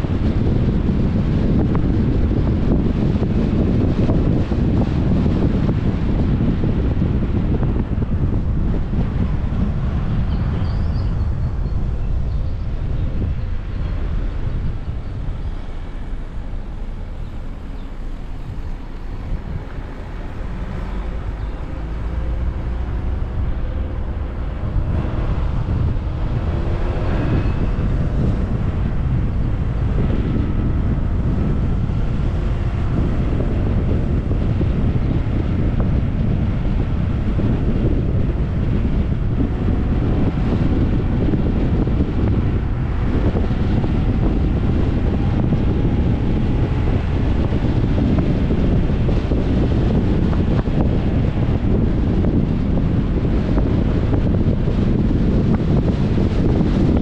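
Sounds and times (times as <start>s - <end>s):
road and engine rumble: 0.0s - 57.0s
wind buffeting microphone: 0.0s - 57.0s.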